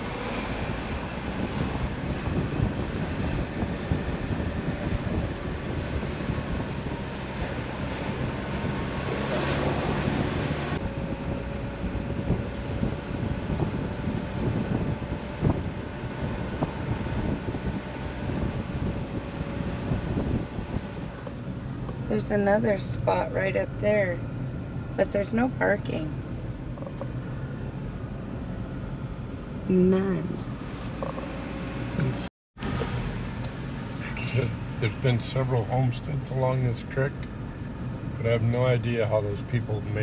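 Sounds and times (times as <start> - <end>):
wind hiss: 0.0 - 22.8
engine and tyre rumble: 0.0 - 40.0.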